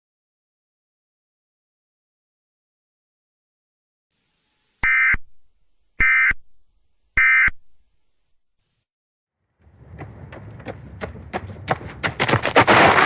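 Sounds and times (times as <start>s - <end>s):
digital data tone bursts: 4.8s - 6.6s, 7.2s - 7.8s.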